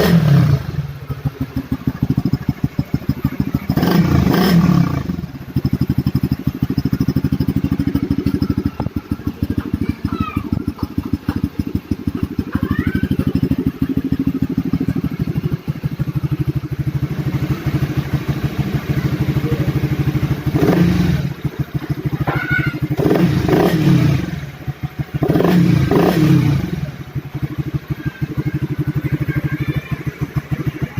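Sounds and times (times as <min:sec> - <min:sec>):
motorcycle engine idling: 0:00.0 - 0:30.9
motorcycle engine revving: 0:00.0 - 0:30.9.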